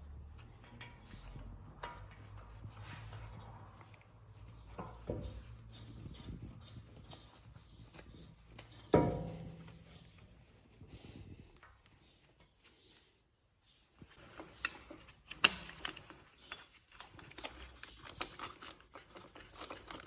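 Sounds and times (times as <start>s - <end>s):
light metal scraping: 0.3s - 11.6s
small metal clicks: 14.2s - 20.0s.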